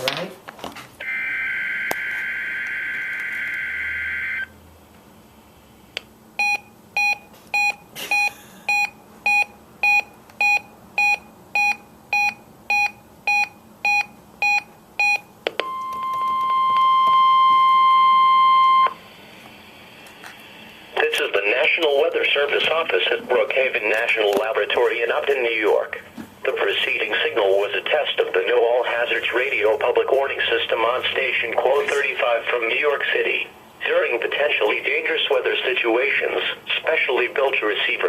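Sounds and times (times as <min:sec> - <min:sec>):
loud warning alarm tone: 0:01.0 - 0:04.6, 0:06.4 - 0:19.1.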